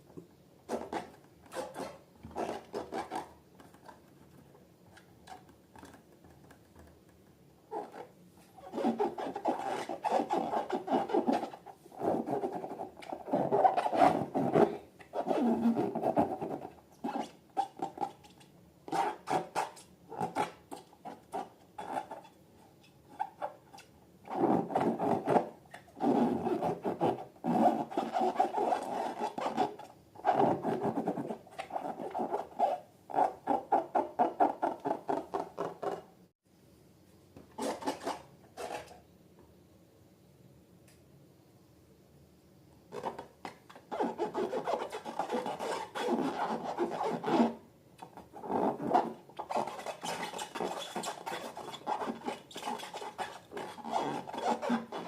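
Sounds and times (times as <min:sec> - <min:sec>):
slime and balloons rubbing by hand: 0:07.7 - 0:17.3, 0:43.9 - 0:47.6, 0:48.3 - 0:55.0.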